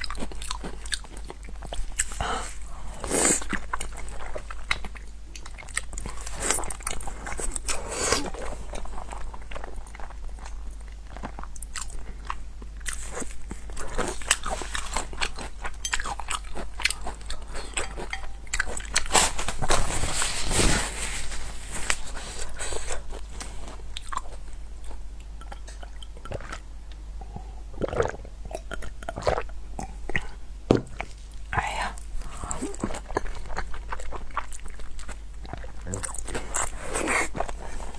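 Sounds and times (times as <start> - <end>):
crunchy food chewing: 0.0 - 29.5, 30.1 - 37.9.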